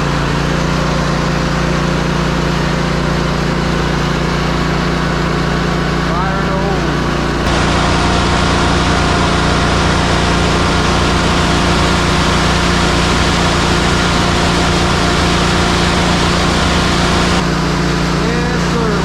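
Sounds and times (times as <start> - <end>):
diesel truck engine running: 5.6 - 17.4.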